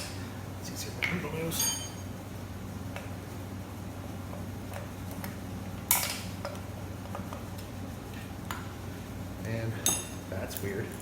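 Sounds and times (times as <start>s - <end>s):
steady low hum: 0.0s - 11.0s
sharp metallic clink: 1.6s - 2.1s.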